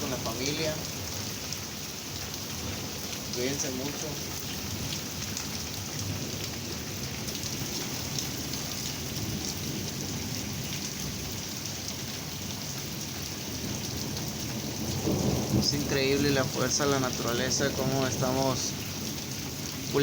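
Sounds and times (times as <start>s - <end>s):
heavy rain pouring: 0.0s - 20.0s
low thunder rumble: 13.5s - 20.0s.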